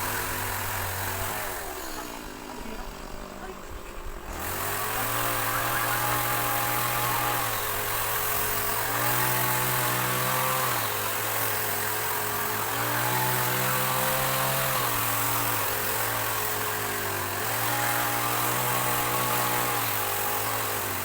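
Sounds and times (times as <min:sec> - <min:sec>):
small engine revving: 0:00.0 - 0:21.0.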